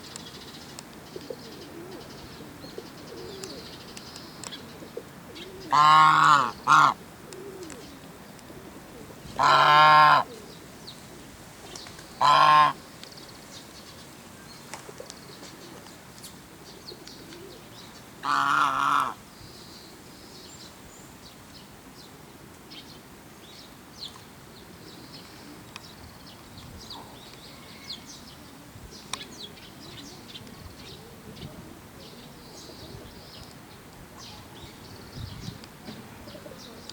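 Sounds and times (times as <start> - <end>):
goose honking: 5.7 - 7.0, 9.4 - 10.2, 12.2 - 12.8.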